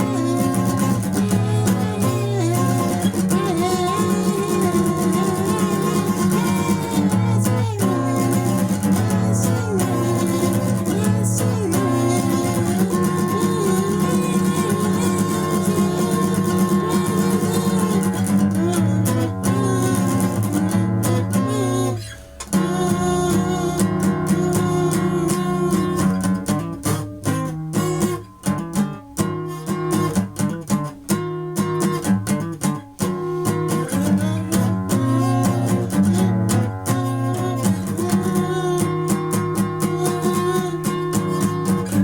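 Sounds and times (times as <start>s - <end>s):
guitar strumming chords: 0.0s - 42.0s.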